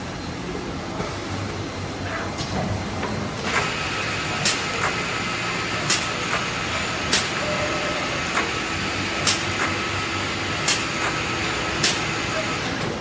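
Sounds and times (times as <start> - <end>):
drilling machine humming: 3.2 - 13.0.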